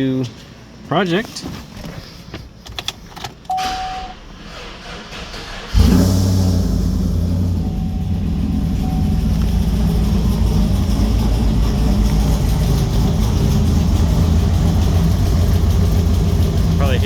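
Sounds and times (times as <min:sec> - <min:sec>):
engine idling with a lope: 0:05.0 - 0:17.0.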